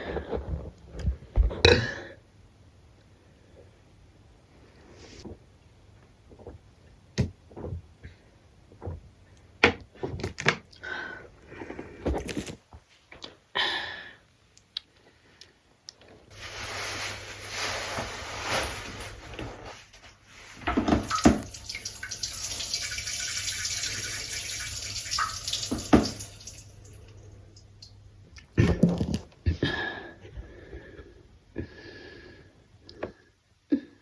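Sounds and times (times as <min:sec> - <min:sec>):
liquid running and splashing: 0:20.8 - 0:28.0.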